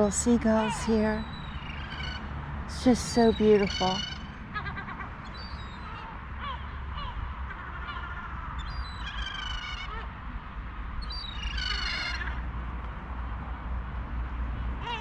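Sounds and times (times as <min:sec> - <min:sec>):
gulls calling: 0:00.0 - 0:10.1, 0:11.0 - 0:12.4.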